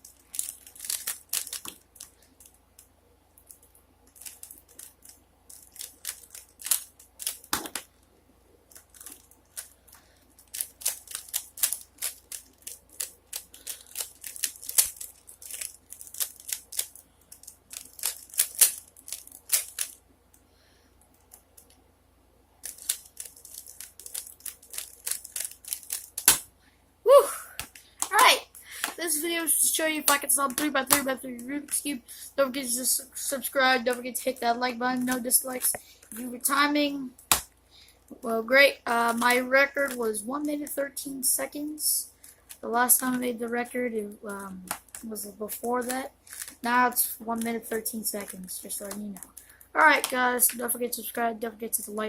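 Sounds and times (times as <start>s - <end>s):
plastic puzzle cube clicking: 0.3s - 2.1s, 10.4s - 20.0s, 22.6s - 26.4s.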